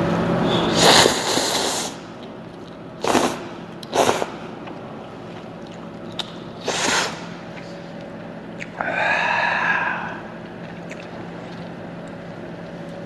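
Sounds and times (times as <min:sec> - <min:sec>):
noodles being slurped: 0:03.0 - 0:04.8.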